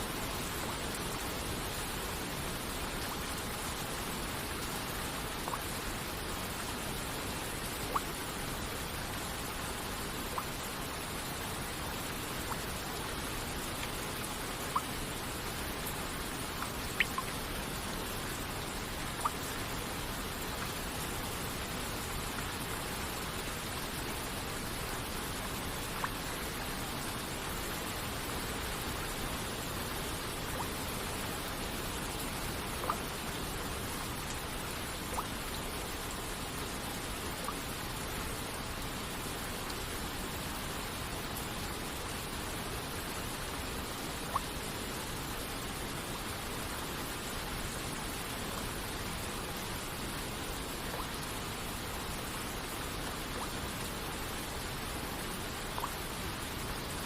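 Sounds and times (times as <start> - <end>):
rain hiss: 0.0 - 57.0
rushing waterfall: 0.0 - 57.0
water drops plinking: 17.0 - 17.4.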